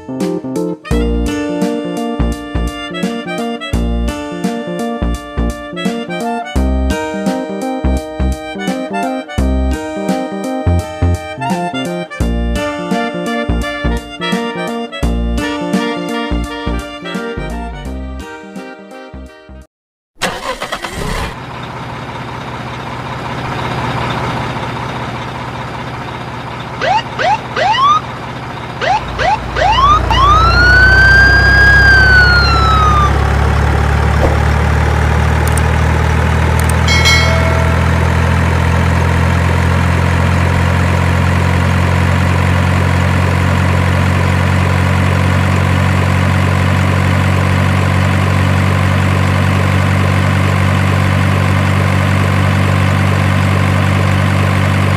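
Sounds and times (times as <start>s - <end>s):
heavy engine running: 0.9s - 16.9s, 20.2s - 54.9s
truck siren horn whooping and wailing: 26.8s - 28.2s, 28.8s - 33.6s.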